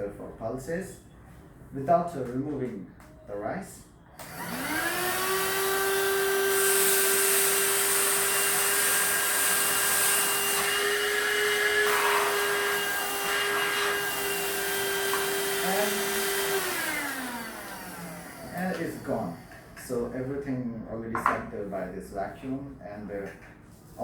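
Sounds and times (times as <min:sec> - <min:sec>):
vacuum cleaner motor whine: 0:04.2 - 0:19.9.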